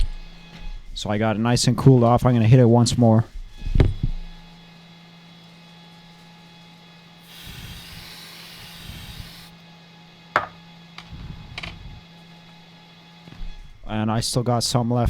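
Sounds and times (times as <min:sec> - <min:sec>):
aerosol spray hissing: 0:07.2 - 0:09.5
light knocks: 0:10.4 - 0:11.8.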